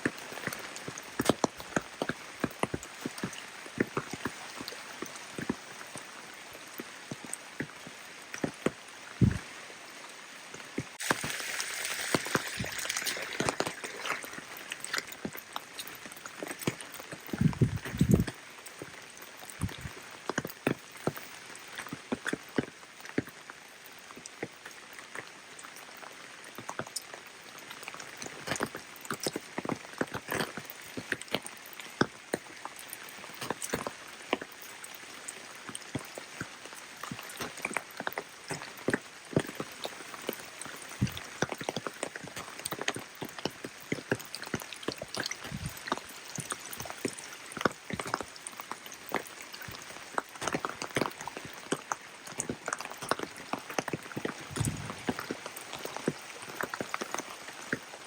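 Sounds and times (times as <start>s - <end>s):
steady rain: 0.0s - 58.0s
raindrop impacts: 9.2s - 9.5s, 10.8s - 18.4s, 19.5s - 20.0s, 41.0s - 42.0s, 44.3s - 47.3s, 54.1s - 57.2s.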